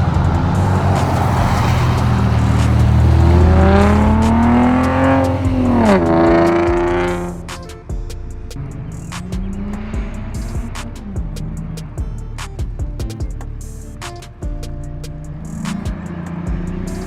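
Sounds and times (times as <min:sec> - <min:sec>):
car engine accelerating: 0:00.0 - 0:17.0.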